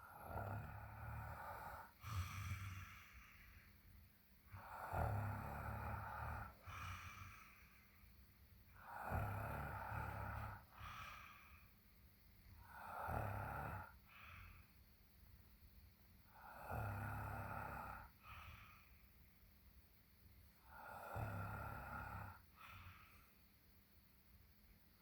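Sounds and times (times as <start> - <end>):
person snoring: 0.0 - 3.6, 4.5 - 7.8, 8.7 - 11.7, 12.6 - 14.6, 16.3 - 18.9, 20.6 - 23.3.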